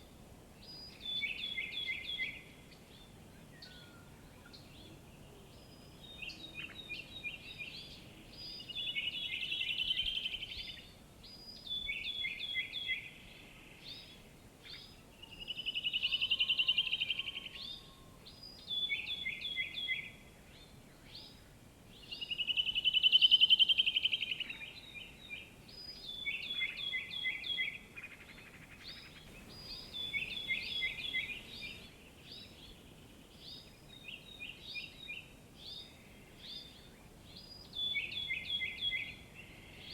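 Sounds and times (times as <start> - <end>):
faint outdoor hiss: 0.0 - 39.9
songbirds singing: 0.0 - 39.9.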